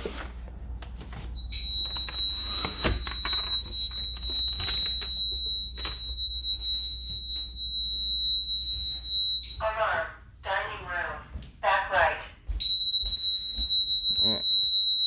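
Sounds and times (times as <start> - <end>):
high-pitched alarm tone: 1.4 - 10.0, 12.6 - 15.0.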